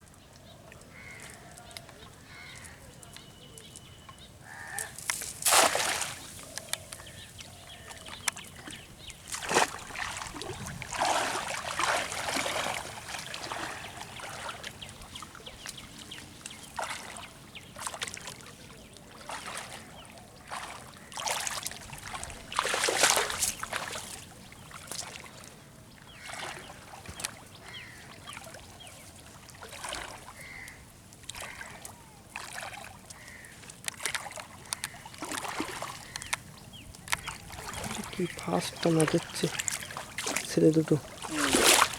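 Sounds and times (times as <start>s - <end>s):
water splashing from dragged net: 5.0s - 6.4s, 9.3s - 14.7s, 20.5s - 24.2s, 37.4s - 41.9s.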